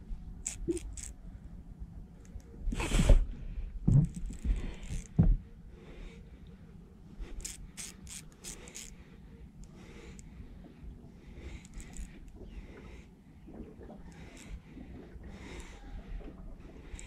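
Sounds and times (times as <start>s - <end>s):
fishing tackle clicking and rattling: 0.4s - 1.2s, 4.0s - 5.2s, 7.3s - 9.0s, 11.5s - 12.4s.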